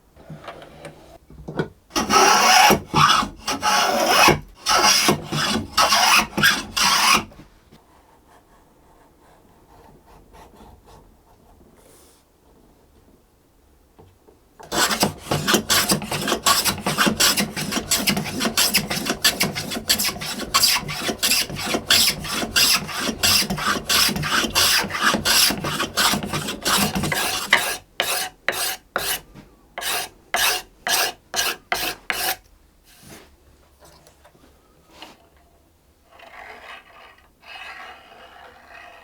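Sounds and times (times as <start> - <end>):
hand tool shaving wood: 2.0 - 7.3, 14.6 - 29.2, 29.8 - 32.4.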